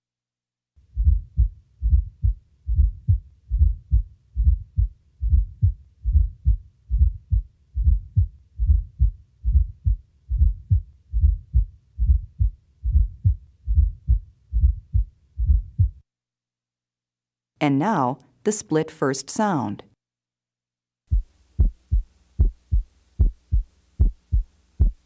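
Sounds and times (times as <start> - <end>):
heartbeat thuds: 0.9 - 16.0, 21.1 - 25.0.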